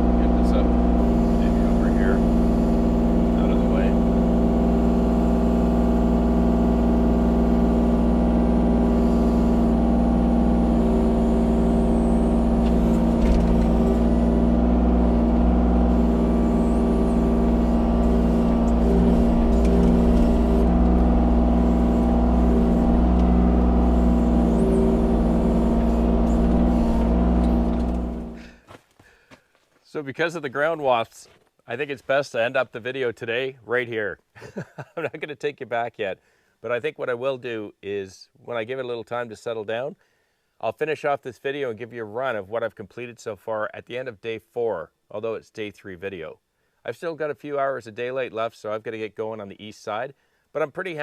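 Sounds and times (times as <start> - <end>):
excavator diesel engine running: 0.0 - 28.6.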